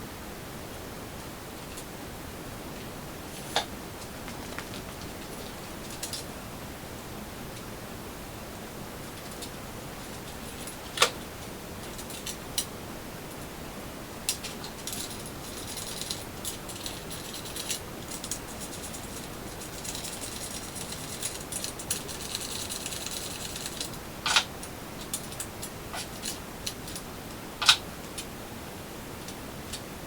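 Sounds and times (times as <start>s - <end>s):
steady hiss: 0.0s - 30.0s
sharp clacks: 4.2s - 5.0s.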